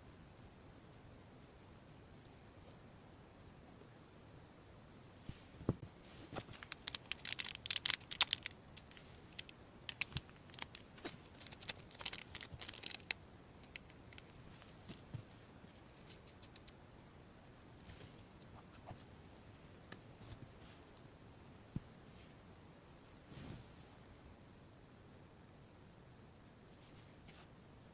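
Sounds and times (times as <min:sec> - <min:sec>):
crinkling: 0:05.3 - 0:16.8.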